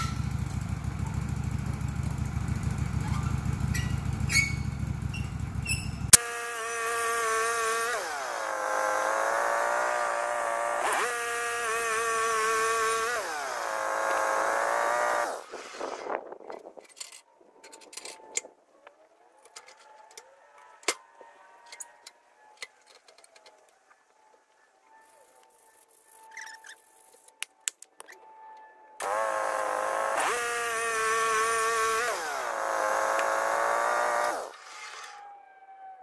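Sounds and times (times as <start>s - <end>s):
band sawmill whining: 0.0s - 16.4s, 29.0s - 35.3s.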